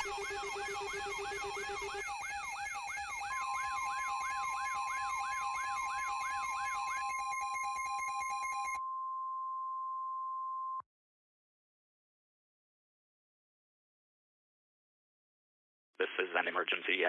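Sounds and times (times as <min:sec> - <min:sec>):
electronic siren sweeping: 0:00.0 - 0:08.8
steady electronic tones: 0:00.0 - 0:08.8
steady high beep: 0:00.0 - 0:09.3.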